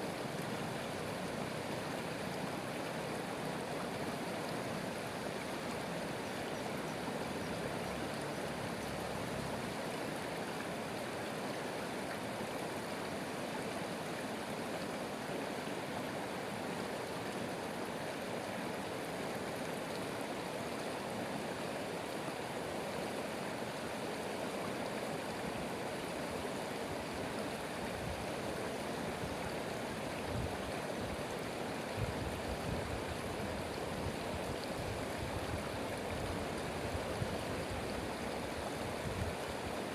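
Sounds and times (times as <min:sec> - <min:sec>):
stream flowing water: 0:00.0 - 0:39.9.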